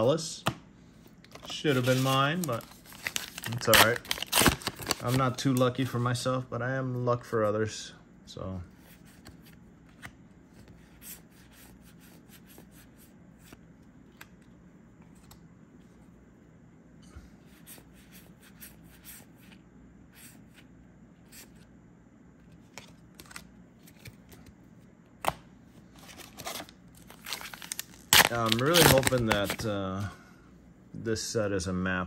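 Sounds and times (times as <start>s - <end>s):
trading cards flipped through: 8.9s - 15.4s, 22.4s - 24.6s.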